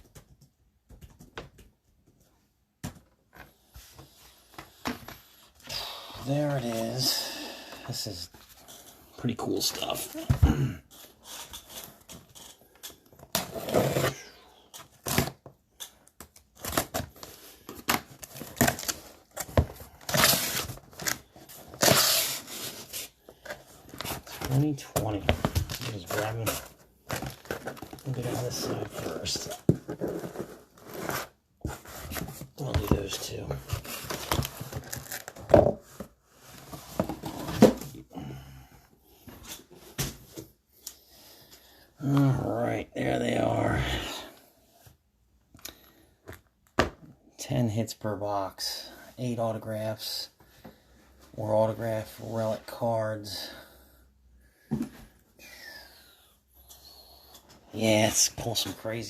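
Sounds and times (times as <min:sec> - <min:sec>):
packaging rustling: 0:16.5 - 0:35.5.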